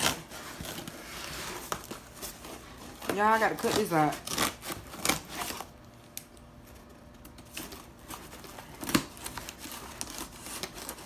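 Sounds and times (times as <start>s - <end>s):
packaging being cut open: 3.0s - 5.7s, 7.5s - 11.0s.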